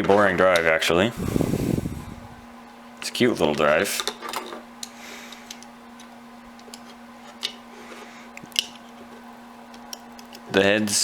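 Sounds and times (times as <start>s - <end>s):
low hum: 1.1s - 2.6s.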